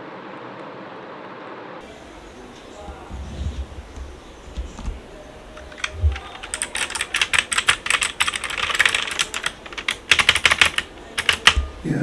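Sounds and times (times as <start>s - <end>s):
mechanical keyboard typing: 1.9s - 12.0s.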